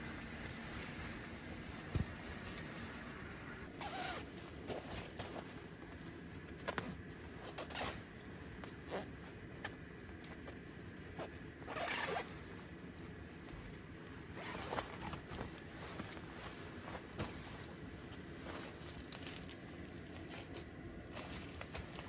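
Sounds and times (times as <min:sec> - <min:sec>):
zipper being pulled: 0:03.8 - 0:05.2, 0:07.4 - 0:08.0, 0:11.2 - 0:12.4, 0:14.3 - 0:15.3.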